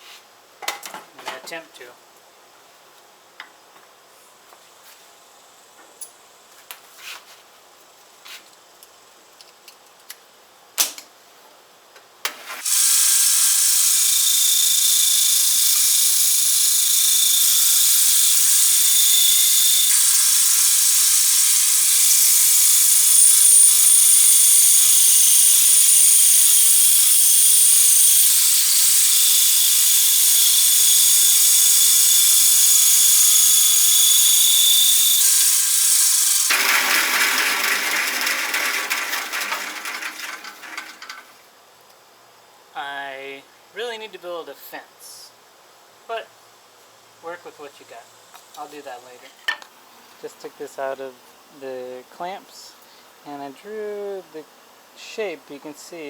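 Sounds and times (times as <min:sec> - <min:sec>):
bandsaw cutting board: 0:12.3 - 0:41.4.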